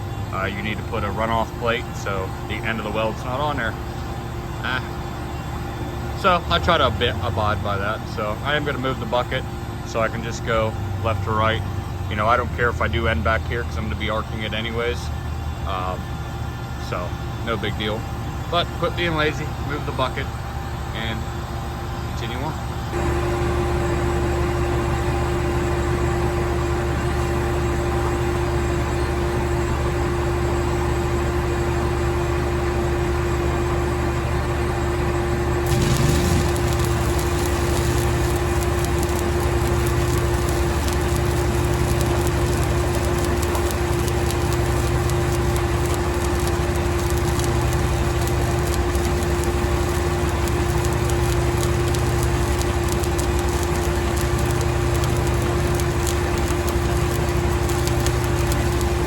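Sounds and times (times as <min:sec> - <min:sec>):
engine hum: 0:35.4 - 0:59.0
welding arc crackling: 0:35.6 - 0:59.0.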